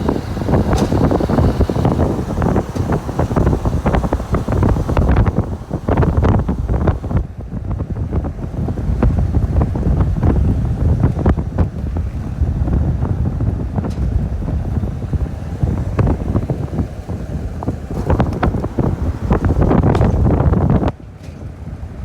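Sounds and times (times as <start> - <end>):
knocks and rattles: 0.0 - 7.2, 17.9 - 20.7
wind buffeting microphone: 0.0 - 22.0.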